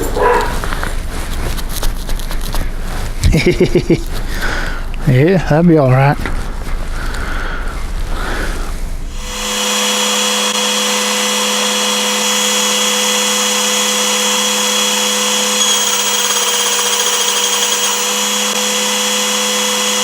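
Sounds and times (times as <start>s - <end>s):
small electric motor whining: 9.2s - 20.0s.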